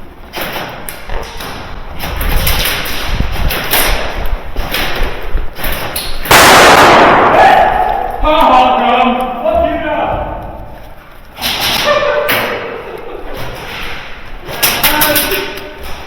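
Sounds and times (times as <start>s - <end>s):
airsoft guns firing: 2.6s - 8.8s.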